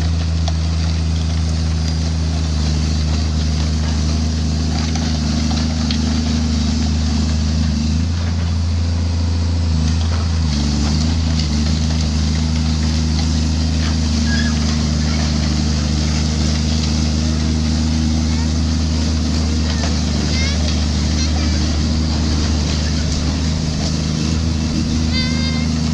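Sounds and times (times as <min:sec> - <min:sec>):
engine humming under load: 0:00.0 - 0:25.9.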